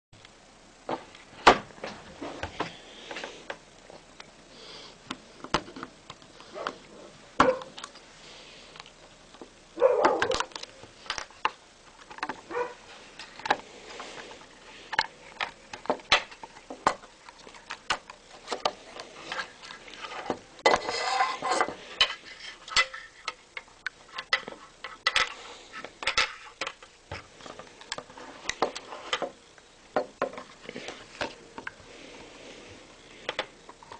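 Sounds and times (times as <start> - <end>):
scraping and rustling: 10.1 - 29.4
small hard objects clicking and tapping: 14.9 - 18.8, 22.0 - 29.4.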